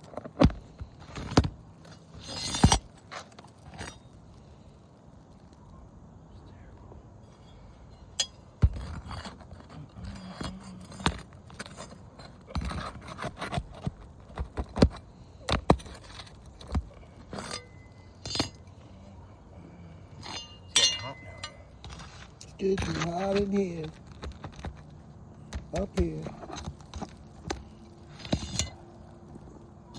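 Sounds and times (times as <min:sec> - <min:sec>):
scraping on shingles: 0:00.0 - 0:04.8, 0:08.0 - 0:18.8, 0:21.6 - 0:29.5
metallic clinks: 0:20.2 - 0:21.8.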